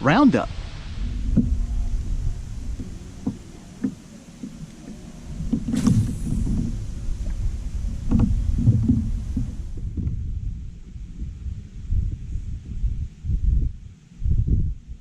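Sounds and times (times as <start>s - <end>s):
wind buffeting microphone: 0.0s - 15.0s
water slapping kayak hull: 0.5s - 11.1s.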